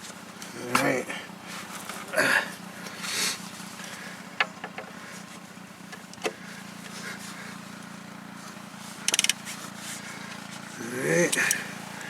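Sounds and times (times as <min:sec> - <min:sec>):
steady low hum: 0:00.0 - 0:12.0
hand tools clicking: 0:09.0 - 0:09.4, 0:11.2 - 0:11.6.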